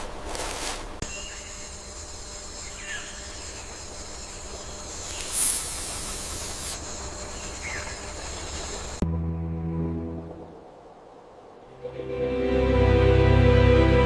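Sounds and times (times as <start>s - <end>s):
steady hiss: 0.0s - 9.0s
high-pitched insect drone: 1.0s - 9.0s.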